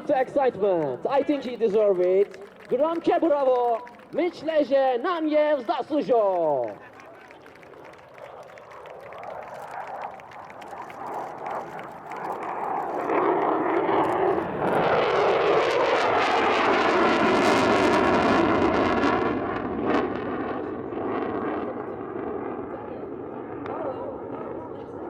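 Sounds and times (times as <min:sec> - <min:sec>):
jet passing: 0:00.0 - 0:25.0.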